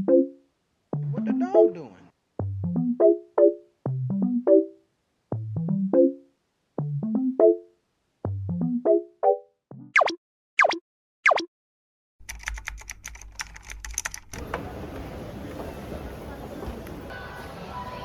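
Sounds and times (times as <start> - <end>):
keyboard music: 0.0 - 0.4, 1.0 - 9.9.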